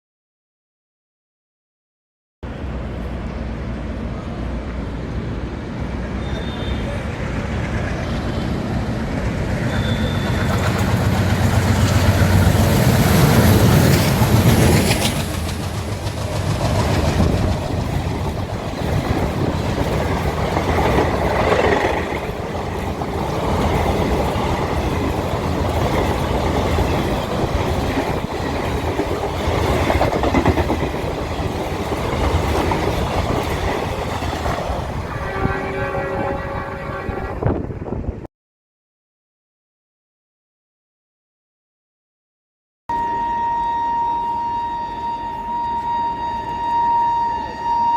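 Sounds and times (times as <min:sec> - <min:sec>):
locomotive rumble: 0:02.5 - 0:38.2
train wheels clacking over rail joints: 0:09.2 - 0:34.9.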